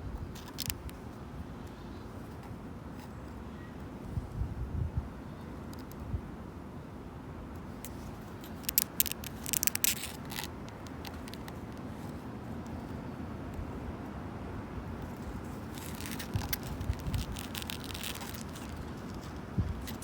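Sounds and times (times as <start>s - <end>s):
distant traffic: 5.0s - 20.0s
wind rumble: 14.6s - 20.0s.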